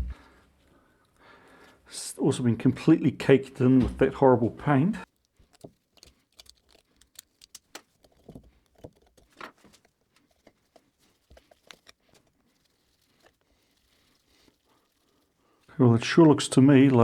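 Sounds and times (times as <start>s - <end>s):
metal parts clicking: 5.2s - 13.3s.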